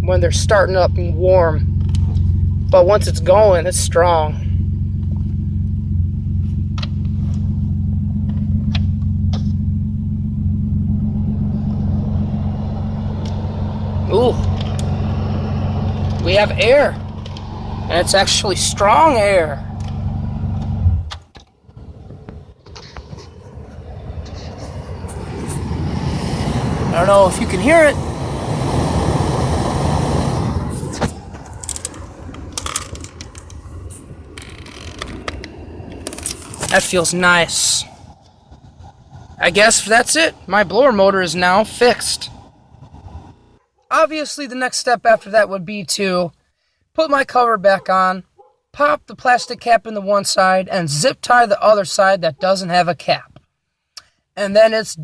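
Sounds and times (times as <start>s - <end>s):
car engine idling: 0.0s - 43.8s
blower fan rushing air: 23.2s - 43.6s.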